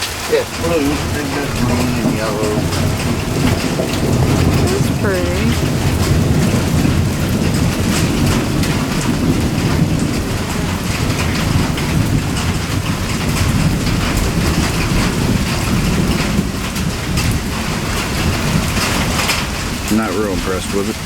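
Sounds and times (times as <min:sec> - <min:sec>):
heavy rain: 0:00.0 - 0:21.0.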